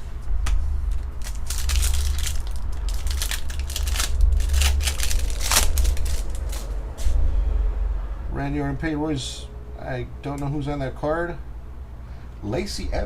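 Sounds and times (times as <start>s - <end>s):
foil wrapper crinkling and tearing: 0.9s - 6.8s.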